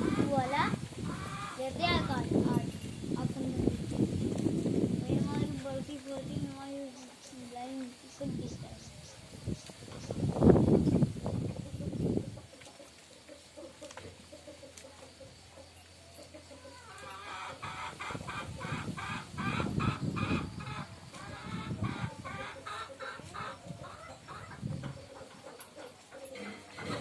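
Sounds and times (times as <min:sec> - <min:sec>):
chickens clucking: 0:00.0 - 0:27.0.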